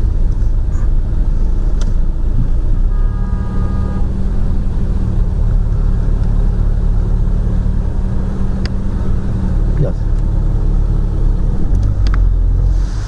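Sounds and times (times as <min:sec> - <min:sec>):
car engine and road rumble: 0:00.0 - 0:13.0
brief high multi-pitch tone: 0:02.9 - 0:04.2.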